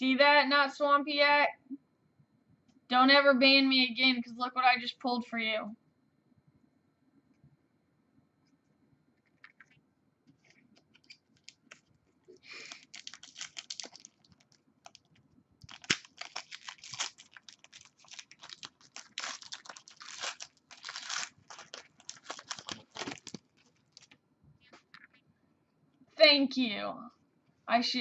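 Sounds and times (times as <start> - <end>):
wrappers crinkling and tearing: 10.8 - 24.2
cards being handled: 12.5 - 25.1.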